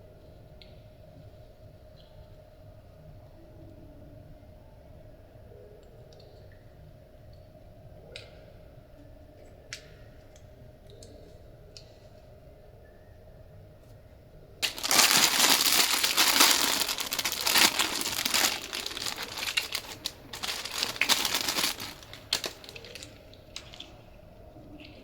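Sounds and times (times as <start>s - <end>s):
loud crinkling and crackling: 14.6s - 24.0s.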